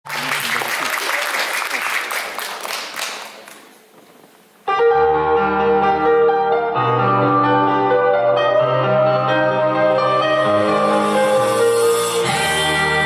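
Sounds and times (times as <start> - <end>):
audience applause: 0.0 - 3.8
piano-led song: 4.7 - 13.0.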